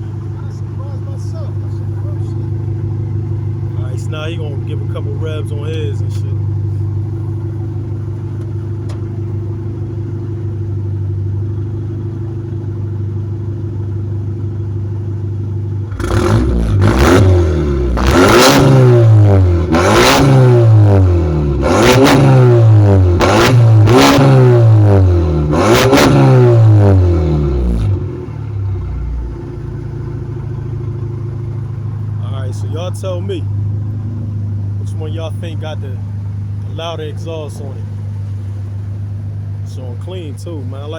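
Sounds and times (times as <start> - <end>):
car engine idling: 0.0 - 40.9
car engine revving: 0.0 - 40.9.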